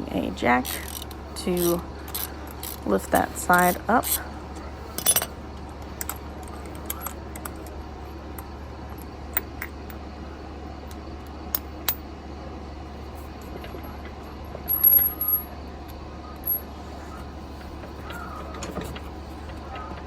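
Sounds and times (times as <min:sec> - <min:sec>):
steady low hum: 0:00.0 - 0:20.0
metal tools clinking: 0:00.6 - 0:05.4, 0:14.6 - 0:15.6, 0:16.4 - 0:16.7.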